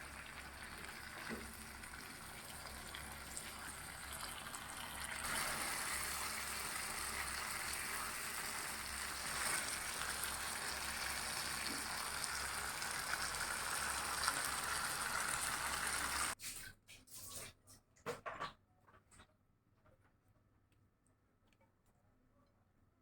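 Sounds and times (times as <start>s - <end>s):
squid sizzling in a pan: 0.0s - 16.4s.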